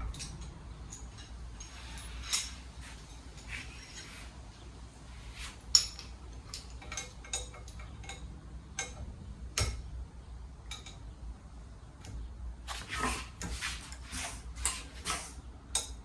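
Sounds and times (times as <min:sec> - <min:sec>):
metal tools clinking: 0:00.1 - 0:04.3.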